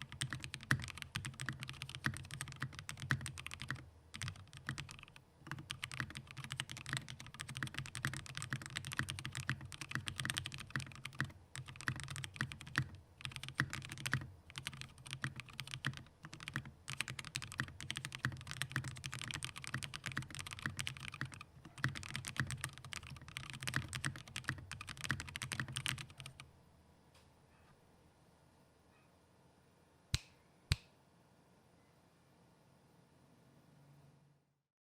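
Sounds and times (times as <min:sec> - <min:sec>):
typing on mechanical keyboard: 0:00.0 - 0:26.4.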